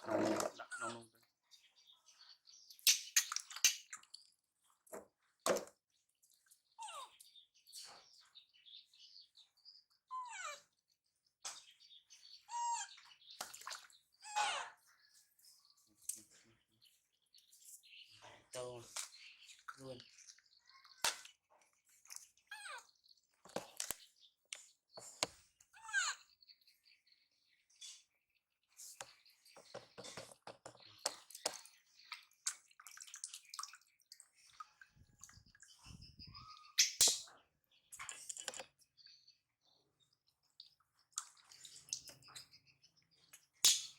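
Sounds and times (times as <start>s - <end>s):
water splashing and dripping: 2.7s - 6.6s, 13.4s - 14.1s, 30.8s - 35.9s, 36.8s - 38.8s, 40.5s - 42.6s, 43.3s - 43.9s
young animal high-pitched cries: 6.8s - 7.2s, 10.1s - 10.7s, 12.5s - 13.0s, 14.2s - 14.9s, 22.5s - 22.9s, 25.8s - 26.3s.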